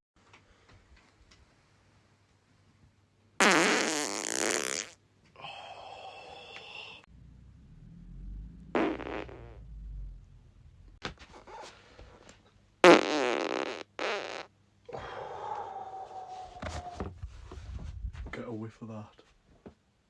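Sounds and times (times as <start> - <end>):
person farting: 3.4 - 5.0, 8.7 - 9.7, 12.8 - 14.5.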